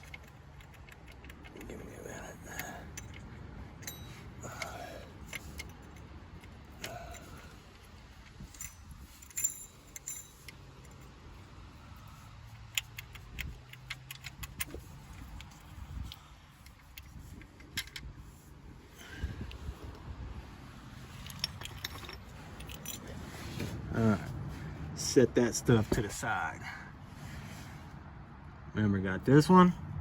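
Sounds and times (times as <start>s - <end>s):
metal tools clinking: 1.6s - 11.2s, 21.0s - 23.7s.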